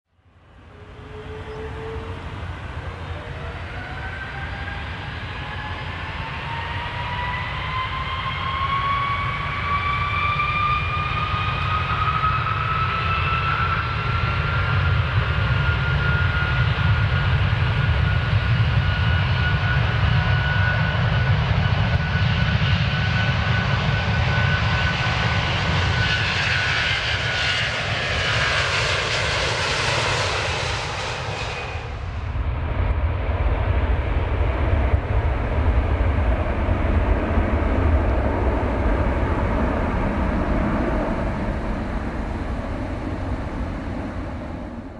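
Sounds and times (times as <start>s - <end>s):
airplane engine whine: 0.1s - 44.9s.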